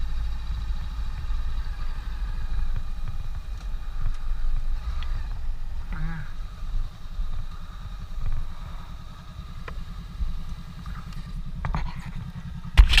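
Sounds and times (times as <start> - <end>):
motorcycle engine running at low revs: 0.0 - 13.0.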